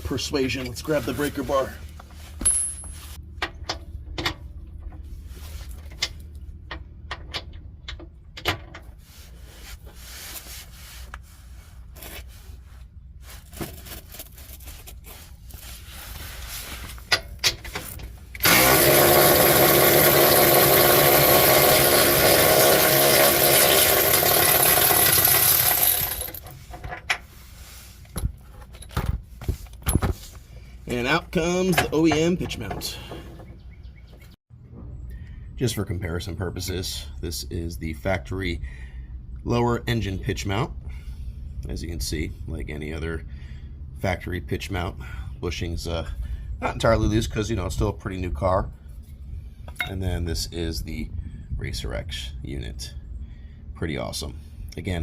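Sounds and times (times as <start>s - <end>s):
power tool running: 18.4s - 26.4s.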